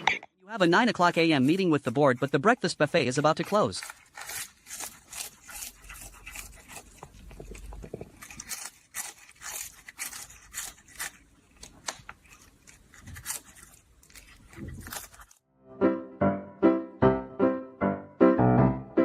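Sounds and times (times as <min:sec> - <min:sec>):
pet crunching food: 0:00.5 - 0:15.4
piano music: 0:15.5 - 0:19.0.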